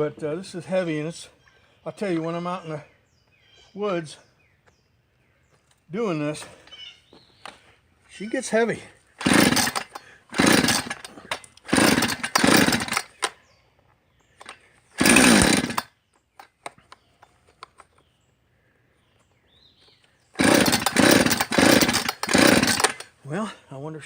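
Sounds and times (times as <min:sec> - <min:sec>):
chainsaw cranking and sputtering: 0:09.0 - 0:13.4, 0:14.3 - 0:16.8, 0:20.3 - 0:23.5.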